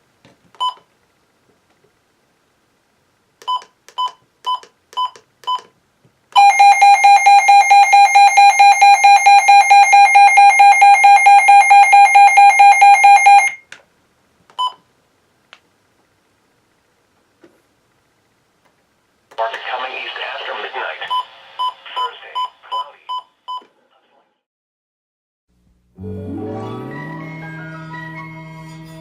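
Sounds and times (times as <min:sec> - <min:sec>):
pulsing alarm tone: 0:06.4 - 0:13.6.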